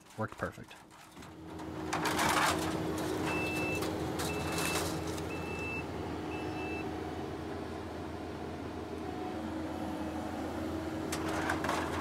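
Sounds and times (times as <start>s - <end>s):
diesel engine running: 0.1s - 12.0s
backup alarm beeping: 3.3s - 6.8s.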